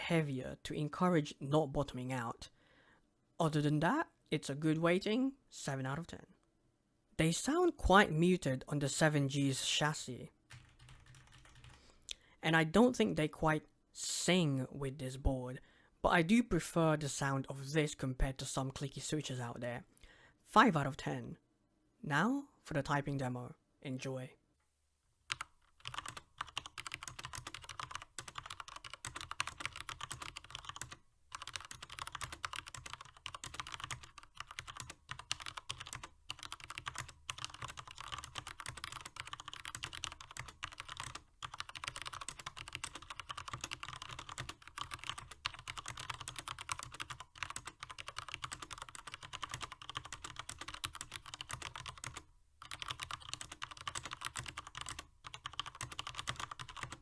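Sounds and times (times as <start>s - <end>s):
mechanical keyboard typing: 10.5s - 11.8s, 25.3s - 57.0s.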